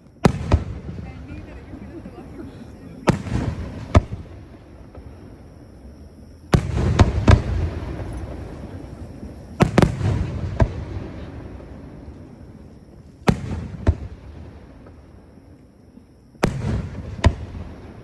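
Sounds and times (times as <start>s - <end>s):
fireworks booming: 0.0s - 18.0s.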